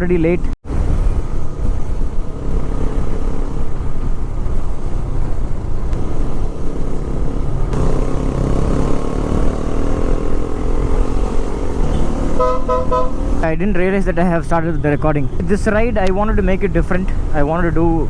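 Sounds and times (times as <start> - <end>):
motorcycle engine running: 1.4 - 13.4.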